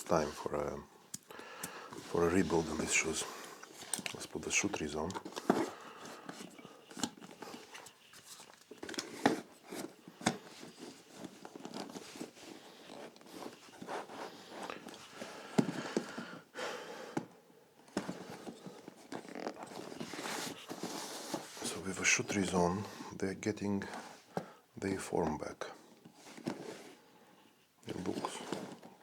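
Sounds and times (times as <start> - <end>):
leather rustling: 0.0 - 16.3, 17.8 - 23.2.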